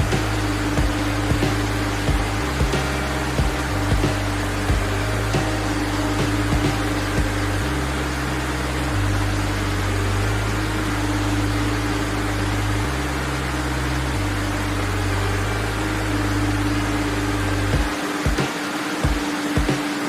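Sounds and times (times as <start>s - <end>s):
steady hiss: 0.0s - 7.7s
music with slow bass notes: 0.0s - 18.4s.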